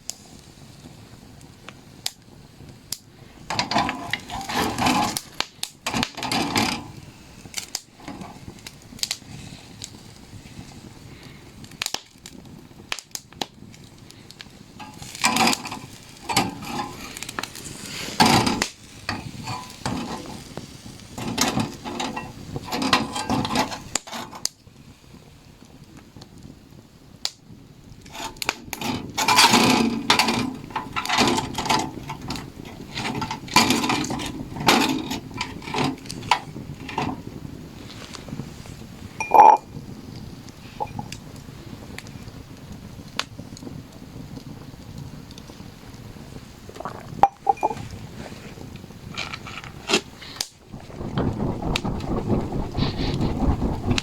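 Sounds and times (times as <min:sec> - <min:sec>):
cookware clinking and scraping: 0:03.5 - 0:05.3, 0:05.9 - 0:06.9, 0:14.8 - 0:17.4, 0:18.1 - 0:20.5, 0:21.2 - 0:24.4, 0:28.1 - 0:37.2, 0:39.2 - 0:39.7, 0:40.8 - 0:41.1, 0:46.8 - 0:47.9.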